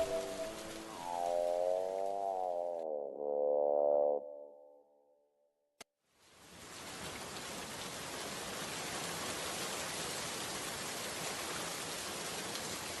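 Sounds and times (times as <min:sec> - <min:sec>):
steady rain falling: 0:00.0 - 0:02.3, 0:06.1 - 0:13.0.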